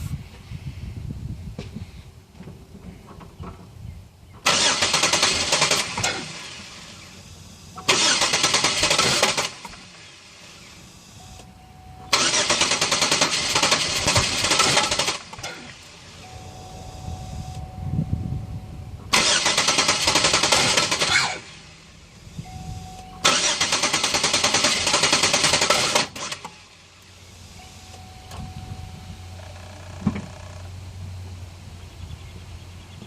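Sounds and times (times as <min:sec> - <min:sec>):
car engine starter cranking: 0:04.4 - 0:17.7, 0:19.0 - 0:21.6, 0:22.3 - 0:30.7.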